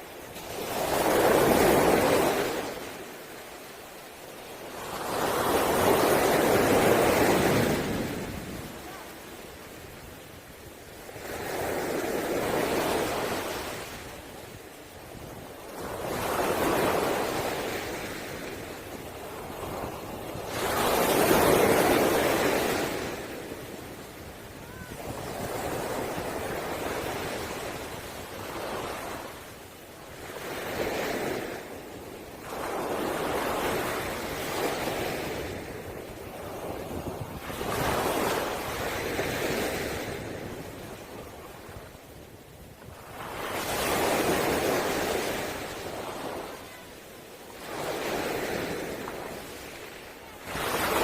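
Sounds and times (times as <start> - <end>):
waves breaking on pebble beach: 0.2 - 9.8, 32.4 - 41.6, 43.0 - 47.0, 47.6 - 51.0.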